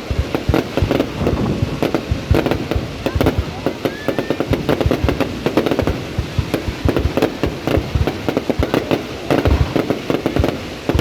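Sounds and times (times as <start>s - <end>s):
fireworks bursting with loud bangs: 0.0s - 11.0s.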